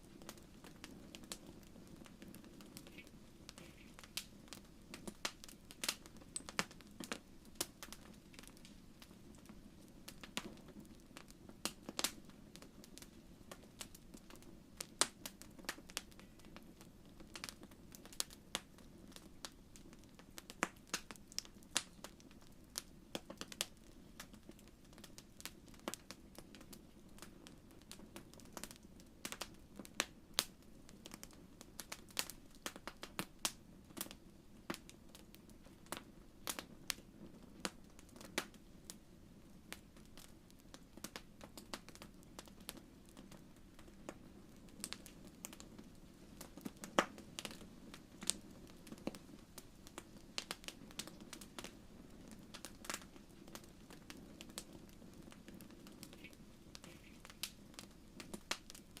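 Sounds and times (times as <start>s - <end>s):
low rumble of burning: 0.0s - 59.0s
wood fire crackling: 0.0s - 59.0s.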